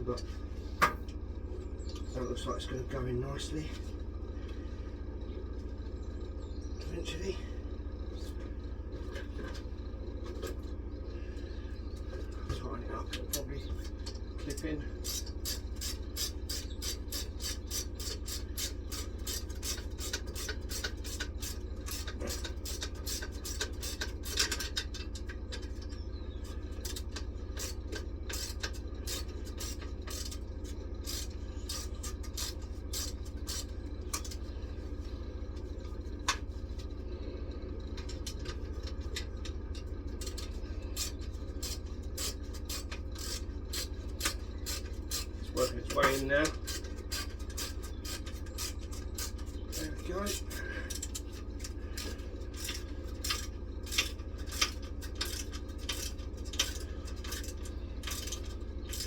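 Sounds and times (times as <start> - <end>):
ratchet spanner clicking: 13.2 - 34.5, 37.9 - 59.0.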